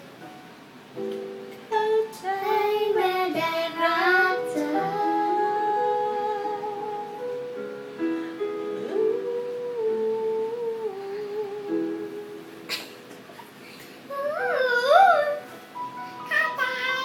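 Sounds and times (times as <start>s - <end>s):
soft instrumental accompaniment: 0.0s - 17.0s
girl singing pop ballad: 1.6s - 7.6s, 8.7s - 12.5s, 16.2s - 17.0s.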